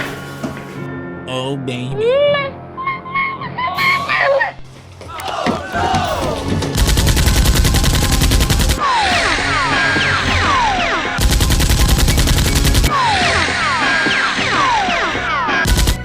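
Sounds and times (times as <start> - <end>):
automatic gunfire: 6.8 - 8.8, 10.3 - 12.9
falling whistling tones: 8.8 - 15.6.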